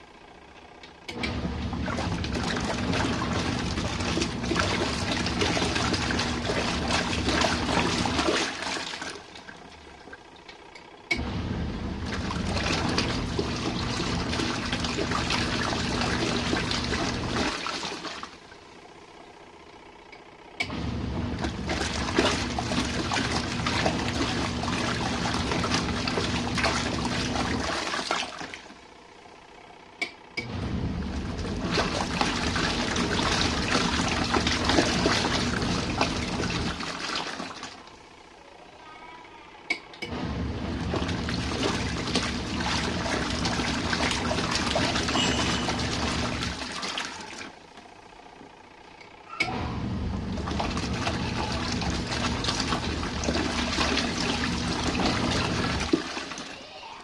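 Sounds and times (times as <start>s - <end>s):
washing machine motor humming: 0.0s - 57.0s
washing machine click: 0.6s - 8.2s, 30.0s - 30.6s, 39.7s - 47.5s
water sloshing: 1.3s - 10.6s, 12.0s - 18.8s, 21.2s - 28.8s, 31.0s - 38.0s, 40.6s - 47.9s, 50.1s - 56.7s.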